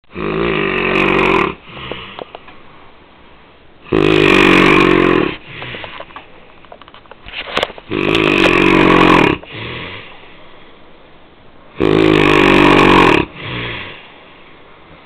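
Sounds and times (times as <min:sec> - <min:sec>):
man snoring loudly: 0:00.1 - 0:01.9, 0:03.9 - 0:05.5, 0:07.9 - 0:10.0, 0:11.8 - 0:14.0.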